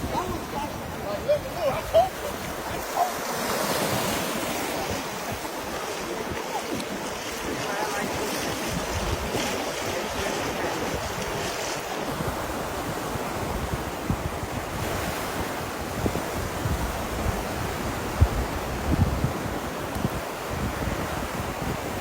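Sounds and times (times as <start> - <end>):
surf breaking on a beach: 0.0 - 22.0
wind buffeting microphone: 0.0 - 22.0.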